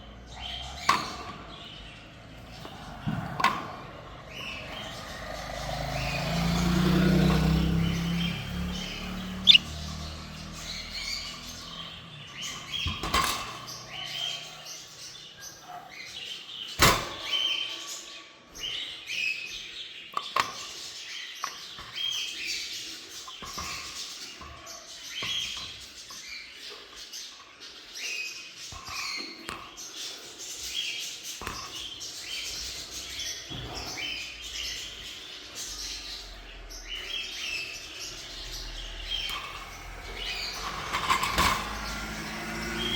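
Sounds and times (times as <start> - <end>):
small parrots chirping: 7.3 - 13.0.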